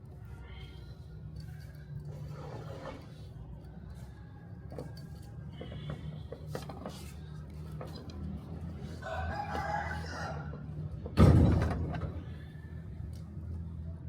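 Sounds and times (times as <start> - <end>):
rooster crowing: 9.0 - 10.8.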